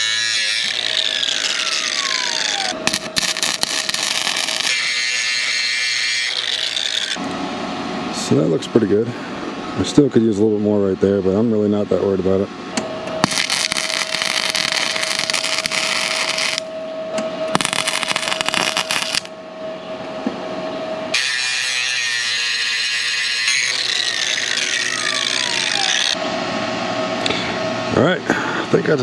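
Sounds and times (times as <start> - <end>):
welding crackle: 0.0 - 7.2, 13.2 - 16.6, 17.5 - 19.3
angle grinder whining: 0.0 - 7.3, 13.1 - 16.7, 17.5 - 19.3, 21.1 - 26.2.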